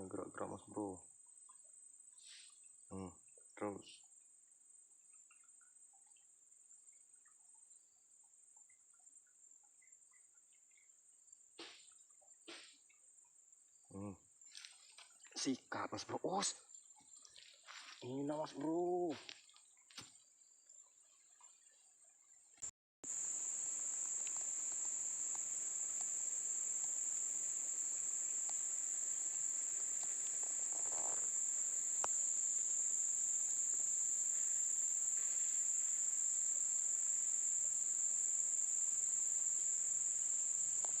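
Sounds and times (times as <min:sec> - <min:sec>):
insects trilling: 0:00.0 - 0:22.4, 0:23.0 - 0:41.0
faint ticks: 0:22.6 - 0:41.0.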